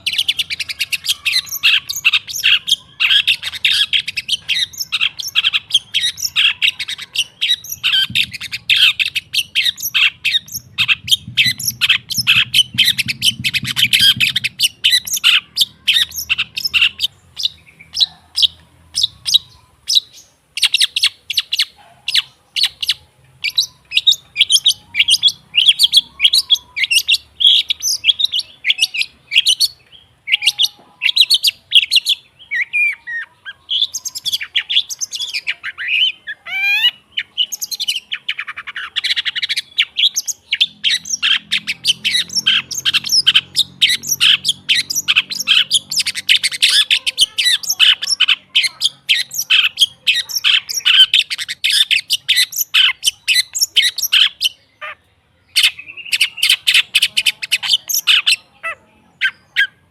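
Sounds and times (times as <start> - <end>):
shrike harsh chattering: 0.0 - 19.9.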